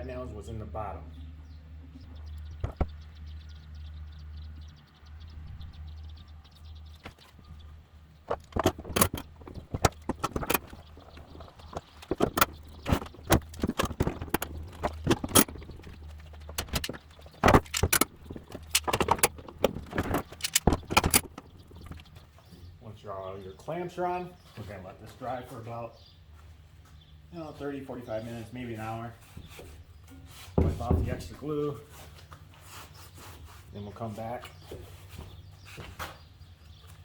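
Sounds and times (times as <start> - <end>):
metal clamp clicks and knocks: 8.3 - 22.1.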